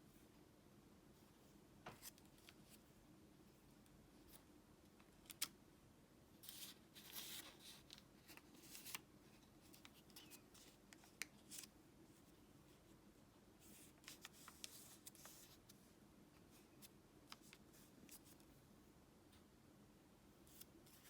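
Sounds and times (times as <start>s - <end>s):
paper rustling and crinkling: 6.4s - 11.7s, 13.7s - 15.8s.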